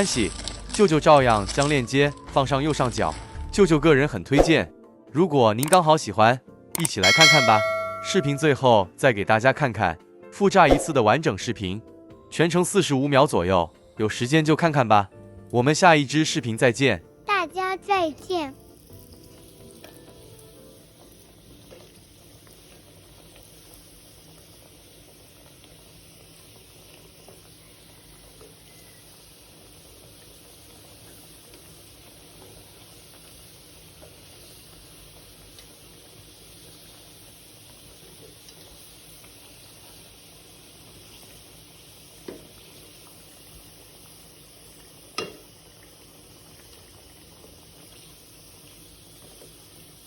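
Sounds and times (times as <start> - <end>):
food frying in hot oil: 0.0 - 3.4, 18.4 - 50.0
faint oil pops: 45.2 - 45.4.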